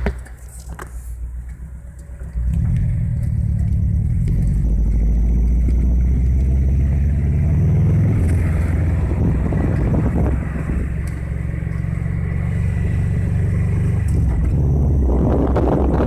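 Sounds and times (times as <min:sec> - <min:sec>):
car engine and road rumble: 0:00.0 - 0:16.0.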